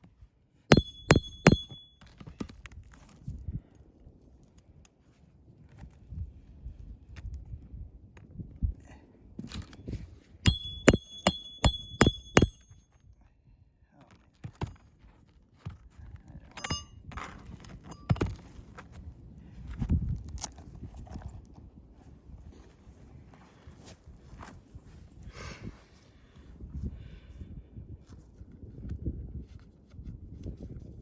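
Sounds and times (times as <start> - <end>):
hammer striking roofing nails: 0.7 - 1.9, 10.5 - 12.6.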